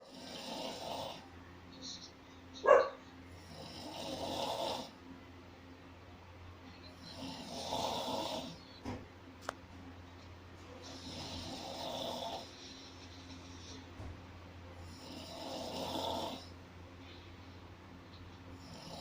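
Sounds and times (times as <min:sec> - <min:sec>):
loud snoring: 0:00.0 - 0:01.3, 0:03.3 - 0:05.0, 0:07.0 - 0:08.6, 0:10.8 - 0:12.5, 0:14.8 - 0:16.6, 0:18.6 - 0:19.0
low steady hum: 0:00.0 - 0:19.0.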